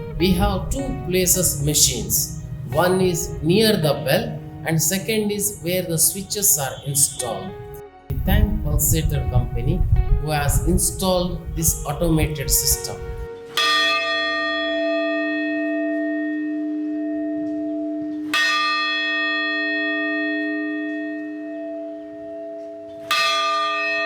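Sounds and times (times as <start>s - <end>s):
church bell ringing: 0.0s - 9.8s, 10.4s - 24.0s.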